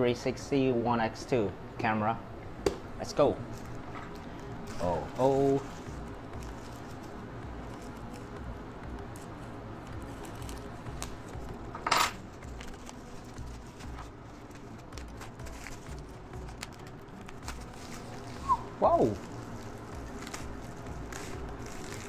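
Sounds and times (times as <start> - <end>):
low steady hum: 0.0 - 22.0
packaging clicks and rustles: 12.2 - 22.0
packaging scrape: 12.4 - 22.0.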